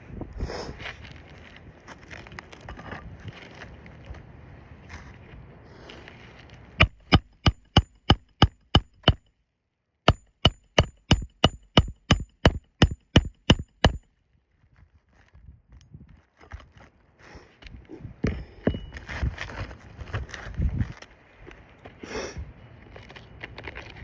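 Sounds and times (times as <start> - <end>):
hammer driving nails: 6.8 - 9.2, 10.1 - 14.1.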